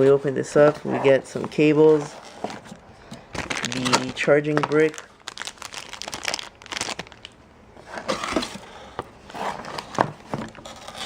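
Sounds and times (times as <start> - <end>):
packaging crinkling: 3.3 - 7.4.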